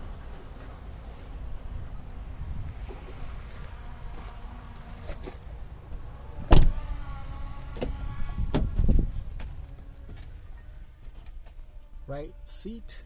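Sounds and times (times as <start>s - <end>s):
slam on car body: 6.5s - 6.8s.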